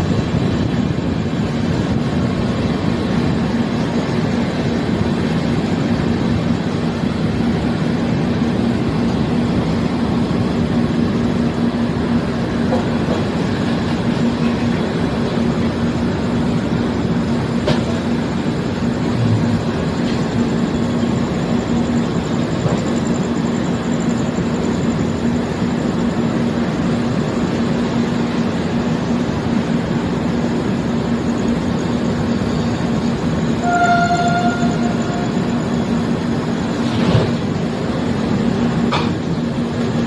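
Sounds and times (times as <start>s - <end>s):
train rumbling: 0.0s - 40.0s
train horn blast: 33.6s - 35.8s.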